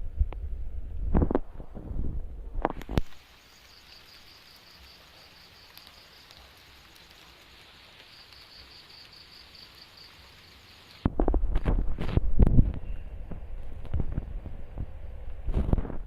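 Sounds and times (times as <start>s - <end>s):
faint steady hiss: 0.0s - 16.0s
insect chirping trill: 2.9s - 11.1s.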